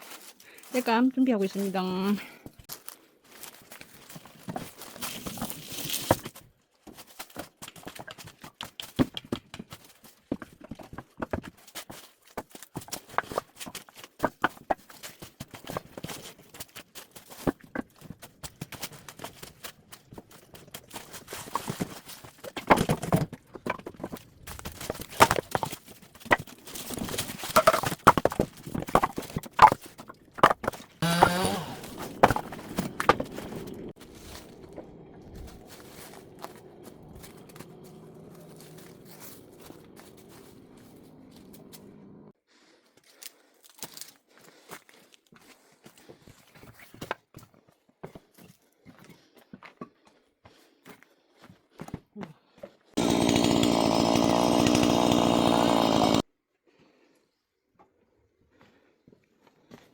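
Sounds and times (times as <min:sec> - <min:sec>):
firewood logs knocking together: 0:03.5 - 0:41.9, 0:53.0 - 0:56.2.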